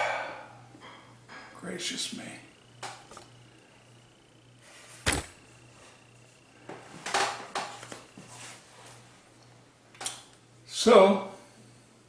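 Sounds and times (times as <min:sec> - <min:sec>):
low electrical hum: 0:00.0 - 0:12.0
sharp knock: 0:05.1 - 0:05.4.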